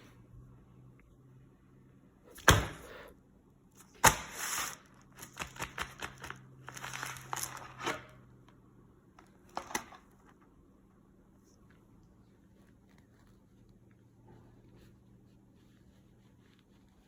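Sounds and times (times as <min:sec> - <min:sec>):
packaging rustling: 0:05.2 - 0:08.1.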